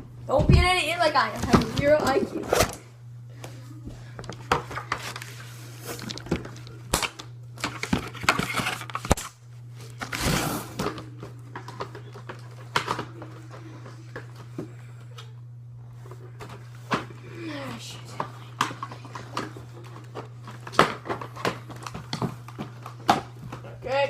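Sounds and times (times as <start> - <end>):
low electrical hum: 0.0 - 24.0
cardboard and plastic packaging handled: 4.2 - 7.0.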